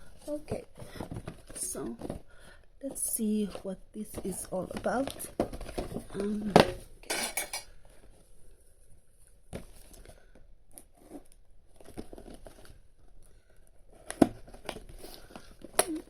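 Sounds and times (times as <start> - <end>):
packaging rustle: 9.7 - 16.0.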